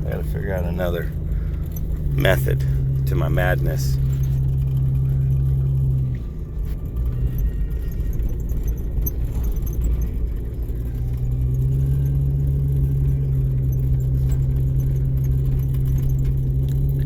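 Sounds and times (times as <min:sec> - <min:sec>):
car engine running under load: 0:00.0 - 0:17.0
low cabin rumble: 0:00.0 - 0:17.0.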